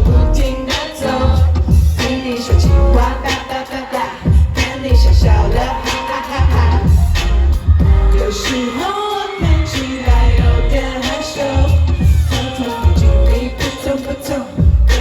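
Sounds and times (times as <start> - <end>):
pulsing bass beat: 0.0 - 3.4, 4.3 - 8.7, 9.4 - 13.8, 14.6 - 15.0
pop song over sound system: 0.0 - 15.0
woman singing: 0.0 - 15.0
drum hits: 4.3 - 8.8.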